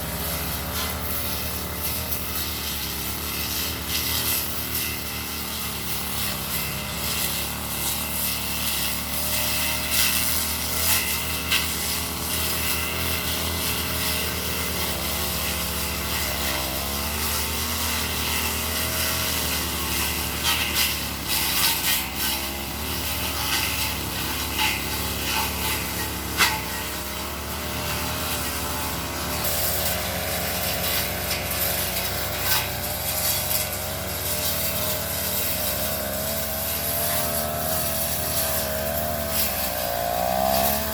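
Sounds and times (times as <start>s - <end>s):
brush cutter engine running: 0.0s - 40.9s.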